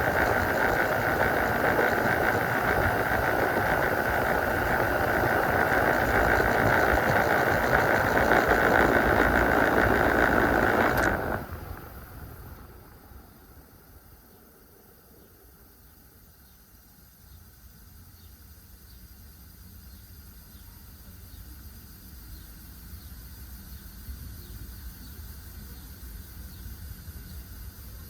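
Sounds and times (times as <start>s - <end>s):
air conditioner unit running: 0.0s - 14.6s.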